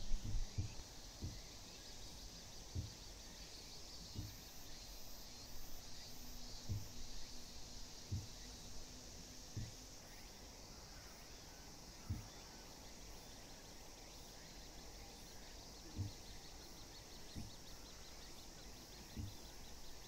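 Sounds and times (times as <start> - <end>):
dull low thumps: 0.0 - 1.6, 2.6 - 3.3, 5.6 - 9.9, 15.8 - 20.0
high insect-like hiss: 0.0 - 20.0.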